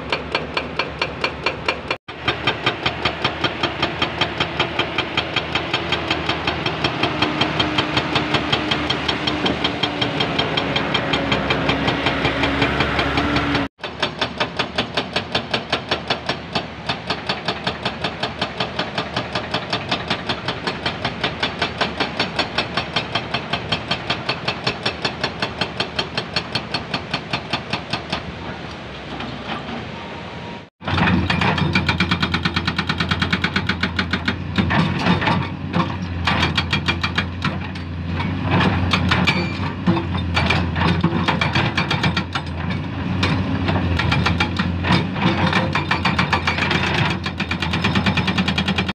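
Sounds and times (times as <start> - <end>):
excavator engine under load: 0.0 - 15.4, 30.8 - 48.9.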